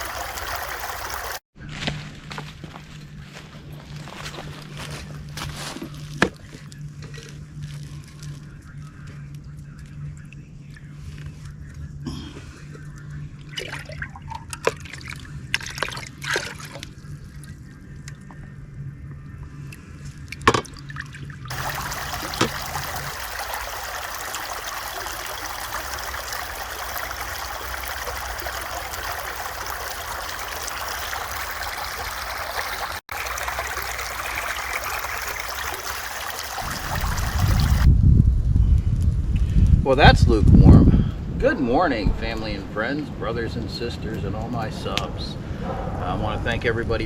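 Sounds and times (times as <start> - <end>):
water pouring: 0.0 - 1.4, 13.5 - 17.6, 20.8 - 37.9.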